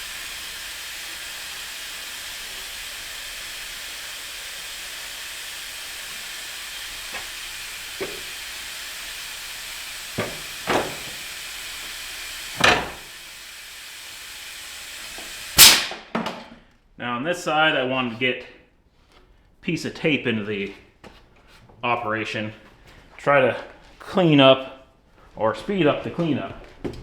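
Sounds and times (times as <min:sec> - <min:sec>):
compressed air hissing: 0:00.0 - 0:16.0
sharp knocks: 0:10.2 - 0:11.2.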